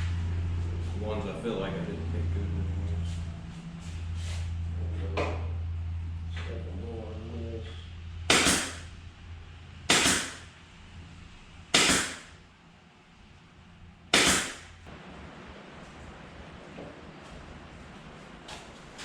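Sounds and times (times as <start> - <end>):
pin nailer firing: 8.3 - 8.9, 9.9 - 10.5, 11.7 - 12.4, 14.1 - 14.8.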